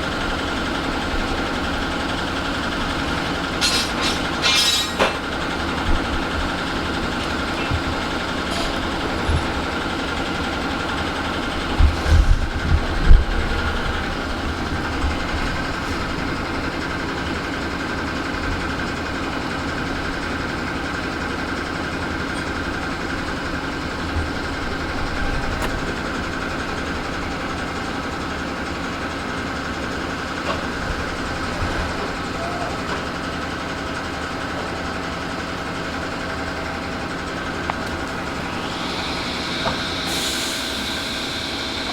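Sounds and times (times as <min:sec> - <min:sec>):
machinery humming with whine: 0:22.6 - 0:41.9.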